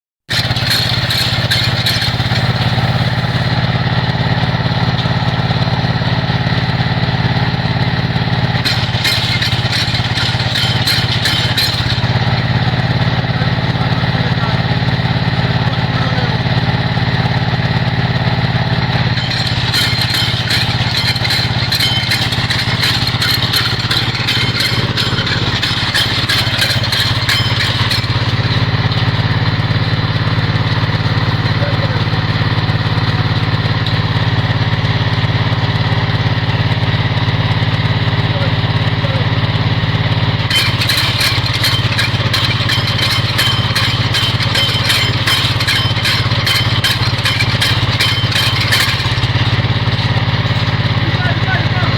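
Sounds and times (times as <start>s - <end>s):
rapid clicking rattle: 0.3s - 35.8s, 37.7s - 51.9s
drilling machine engine running: 0.3s - 51.9s.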